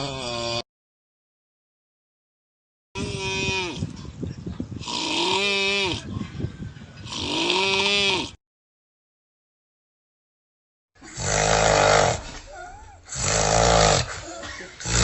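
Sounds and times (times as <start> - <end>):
person snoring loudly: 0.0 - 0.6, 4.8 - 6.0, 7.0 - 8.4, 11.0 - 12.2, 13.1 - 14.2.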